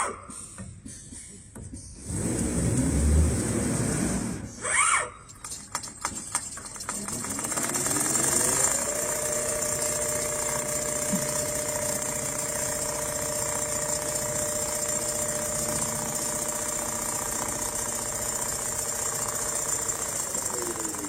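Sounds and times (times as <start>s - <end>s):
sewing machine motor hum: 2.0s - 4.6s, 5.3s - 21.0s
stitching mechanism rattle: 5.2s - 21.0s.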